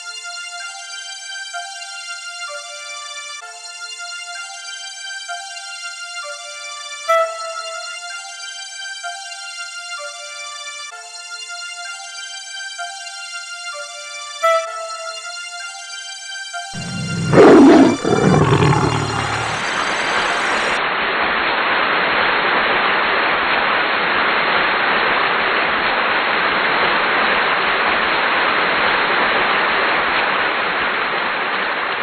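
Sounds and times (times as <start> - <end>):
animal-like roar: 16.8 - 20.8.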